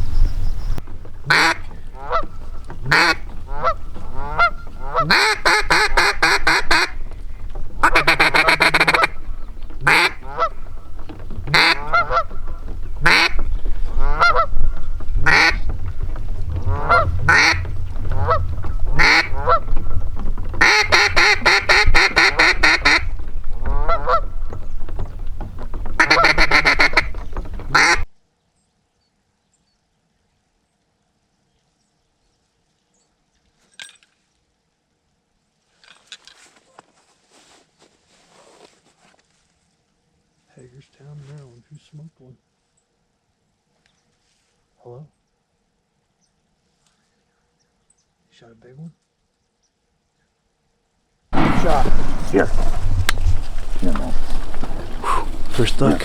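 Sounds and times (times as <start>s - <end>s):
waterfowl honking and quacking: 0.0s - 28.1s, 51.4s - 56.0s.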